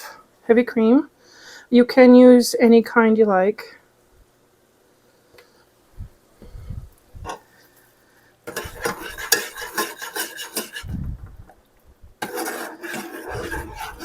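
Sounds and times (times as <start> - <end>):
utensil stirring and scraping pan: 8.5 - 11.0, 12.2 - 14.0.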